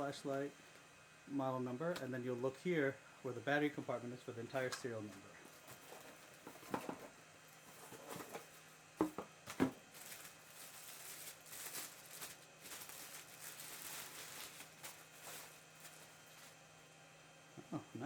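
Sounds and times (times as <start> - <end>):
wrapping rustling: 5.5 - 8.8, 9.5 - 16.8.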